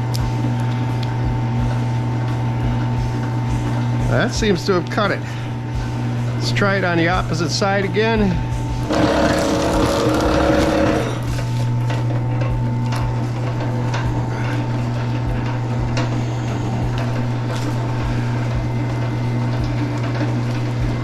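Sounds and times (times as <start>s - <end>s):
wire-stripping machine motor hum: 0.0s - 21.0s
machine grinding: 8.7s - 21.0s.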